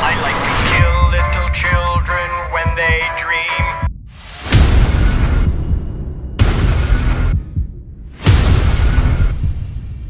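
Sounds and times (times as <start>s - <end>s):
distorted noise with heavy bass: 4.5s - 5.5s, 6.4s - 7.4s, 8.2s - 9.5s.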